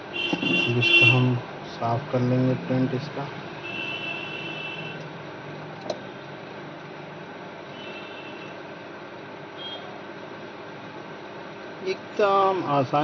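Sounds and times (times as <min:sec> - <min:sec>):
faint high whine: 0:00.1 - 0:05.0.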